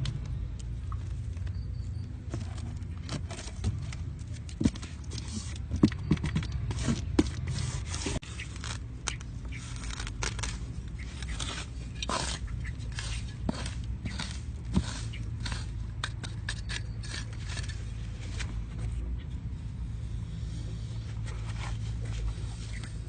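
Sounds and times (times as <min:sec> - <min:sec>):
steady low hum: 0:00.0 - 0:23.0
objects scraping and knocking: 0:02.2 - 0:19.1.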